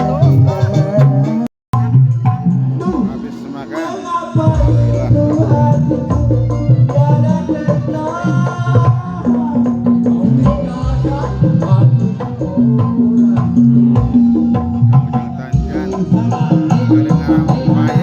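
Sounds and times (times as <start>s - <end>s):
steady bass line: 0.0s - 3.4s, 4.4s - 18.0s
hand drum percussion: 0.0s - 3.6s, 4.3s - 18.0s
pitch-bending melodic lead: 0.0s - 8.1s, 13.8s - 18.0s
live band music: 0.0s - 18.0s.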